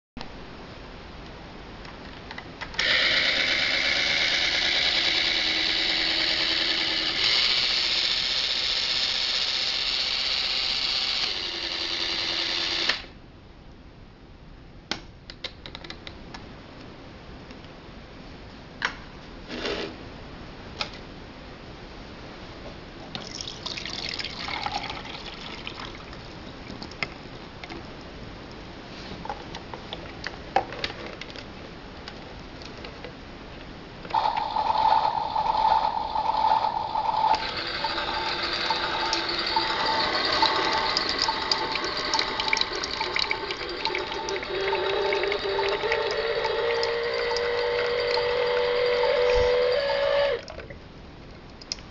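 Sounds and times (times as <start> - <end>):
coffee maker running: 2.8 - 13.1, 34.1 - 50.4
liquid pouring: 23.2 - 27.0, 34.1 - 49.8.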